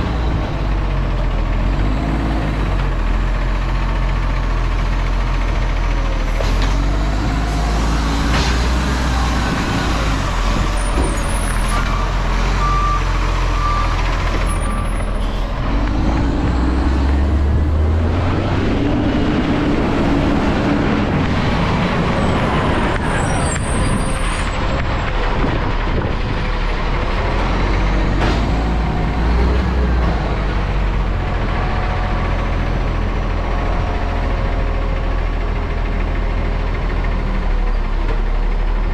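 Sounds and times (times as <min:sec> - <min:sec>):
truck engine revving: 0:06.3 - 0:37.6
reversing beeps: 0:11.6 - 0:15.1.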